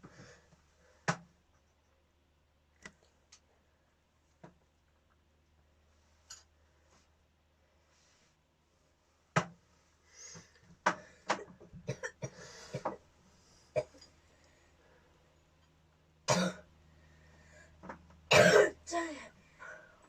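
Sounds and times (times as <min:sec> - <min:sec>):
person coughing: 0:16.3 - 0:16.6, 0:18.3 - 0:19.1.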